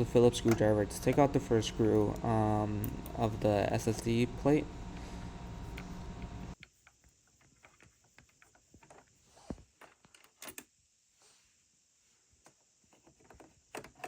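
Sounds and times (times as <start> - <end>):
steady low hum: 0.0 - 6.6.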